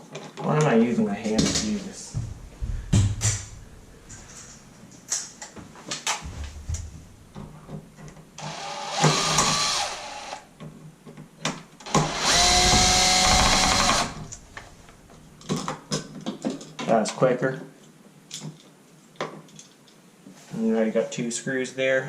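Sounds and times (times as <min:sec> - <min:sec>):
light handling knocks: 0:05.5 - 0:08.3
power drill running: 0:08.4 - 0:10.5, 0:11.8 - 0:14.4.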